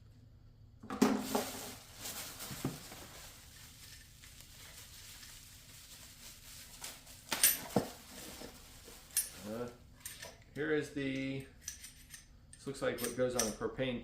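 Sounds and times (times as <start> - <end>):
packaging rustling: 1.2 - 9.7.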